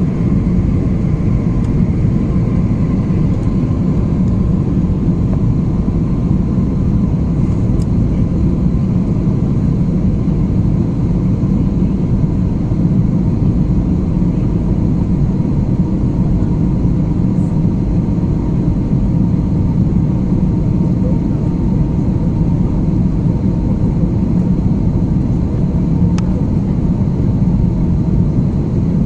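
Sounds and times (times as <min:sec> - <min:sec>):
airliner cabin engine drone: 0:00.0 - 0:29.0.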